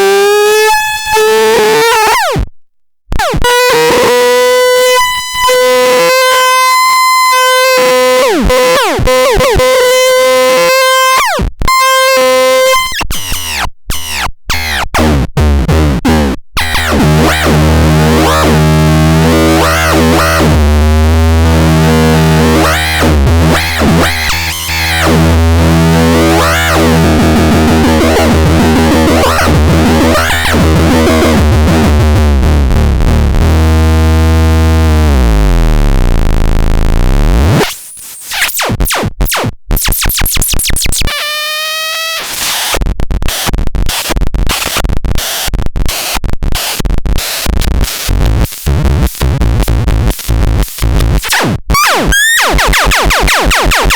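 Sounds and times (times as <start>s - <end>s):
buzzy low synth drone: 15.0s - 37.6s, 47.6s - 53.9s.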